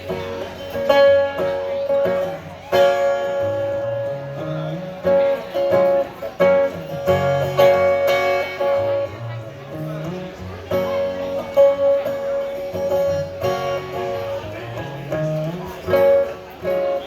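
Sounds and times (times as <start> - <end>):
acoustic guitar strummed chords: 0.0 - 17.0.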